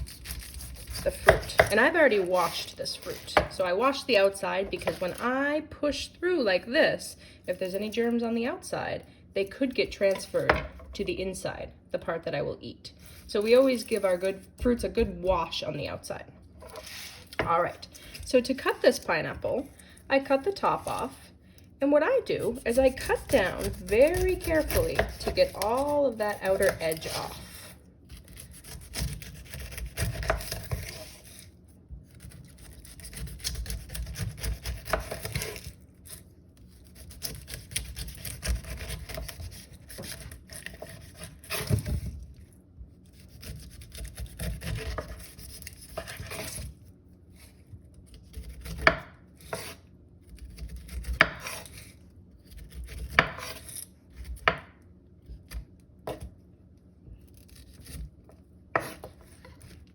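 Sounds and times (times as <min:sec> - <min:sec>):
knife slicing pineapple rind: 0:00.0 - 0:03.7, 0:22.4 - 0:42.4, 0:43.0 - 0:54.6, 0:57.2 - 0:59.9.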